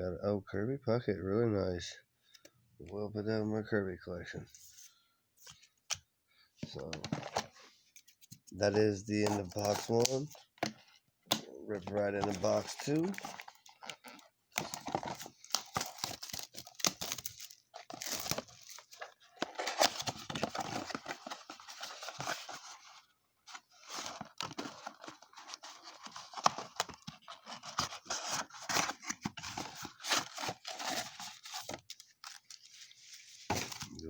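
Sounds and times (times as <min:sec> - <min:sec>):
plastic wrap and cardboard tearing: 0:11.9 - 0:22.5, 0:23.6 - 0:33.9.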